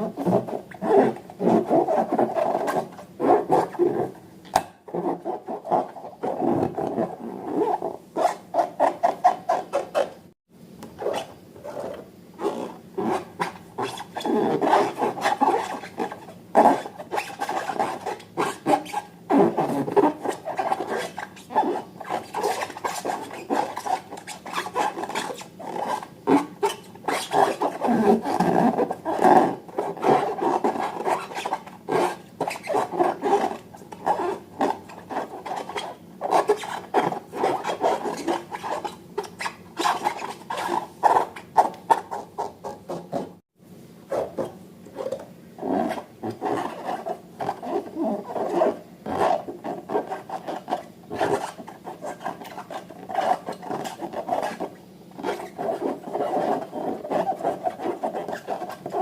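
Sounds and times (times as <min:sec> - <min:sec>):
rubbery balloon squeaks: 0:00.0 - 0:10.3, 0:11.0 - 0:43.4, 0:44.1 - 0:59.0.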